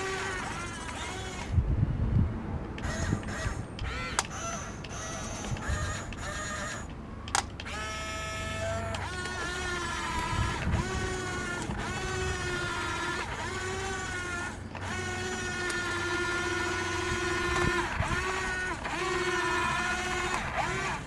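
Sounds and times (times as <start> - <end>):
electric gear motors whining: 0.0 - 1.6, 2.7 - 21.0
sharp click: 2.7 - 7.9.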